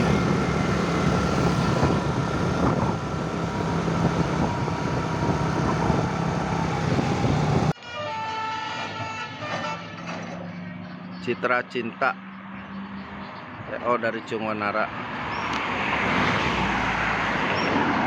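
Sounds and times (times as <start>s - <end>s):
heavy vehicle engine running: 0.0s - 7.8s
loud road noise: 0.0s - 18.0s.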